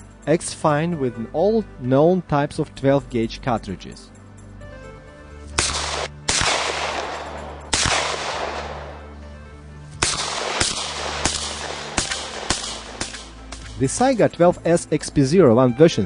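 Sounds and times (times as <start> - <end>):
shotgun shots echoing: 5.6 - 9.2, 10.0 - 13.8.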